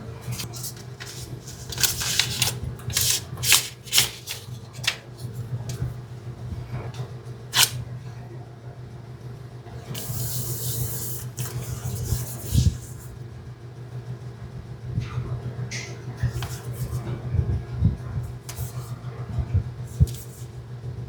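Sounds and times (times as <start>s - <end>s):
packaging rustling: 0.2s - 5.3s, 7.6s - 7.8s
packaging crackling and clicking: 0.3s - 5.8s, 7.6s - 7.8s.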